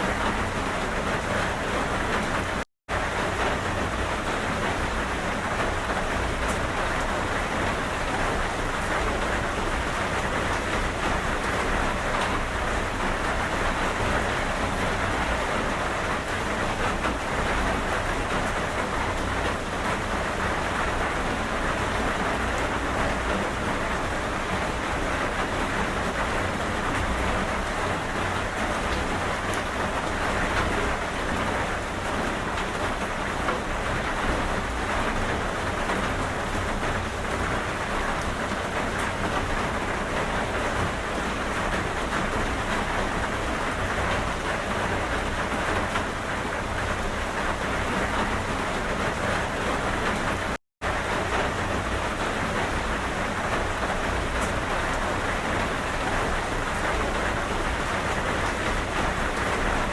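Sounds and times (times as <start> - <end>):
steady rain: 0.0 - 59.9.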